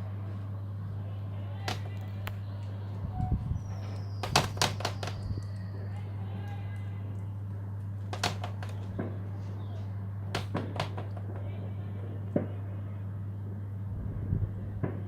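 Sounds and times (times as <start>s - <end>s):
steady low hum: 0.0s - 15.0s
fireworks bangs: 8.1s - 9.6s, 10.3s - 11.6s.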